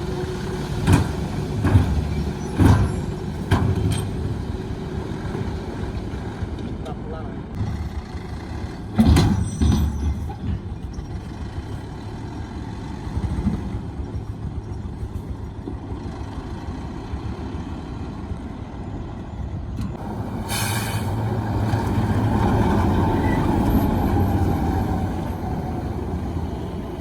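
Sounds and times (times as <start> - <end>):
diesel engine rumbling: 0.0 - 27.0
brief hiss: 20.4 - 21.2.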